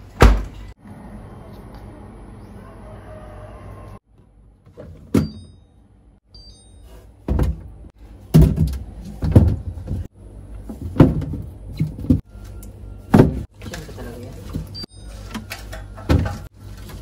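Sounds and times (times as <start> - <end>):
items knocking inside a refrigerator: 7.3 - 10.1, 10.7 - 12.3.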